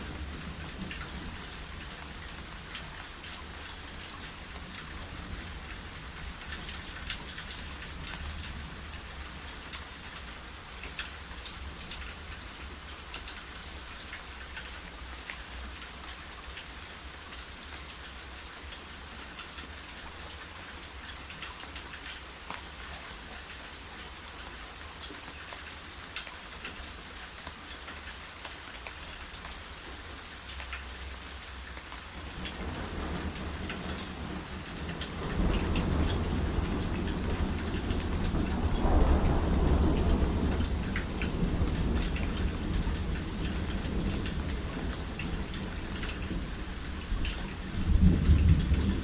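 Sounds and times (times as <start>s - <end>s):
rain hissing: 20.0s - 49.0s
low rumble of thunder: 32.2s - 49.0s.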